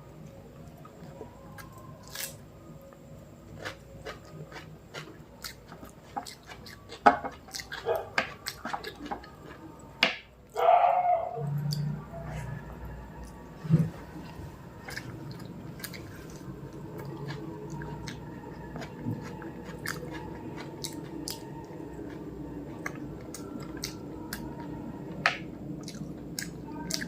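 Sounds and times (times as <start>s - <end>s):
low background hum: 0.0s - 27.0s
person chewing: 3.5s - 9.8s, 14.2s - 24.8s, 25.7s - 27.0s.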